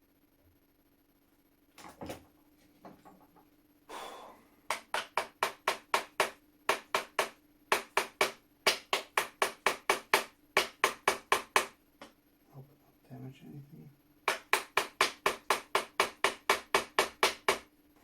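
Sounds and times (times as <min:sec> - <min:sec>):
small hammer tapping metal: 0:04.7 - 0:12.1, 0:14.3 - 0:17.7.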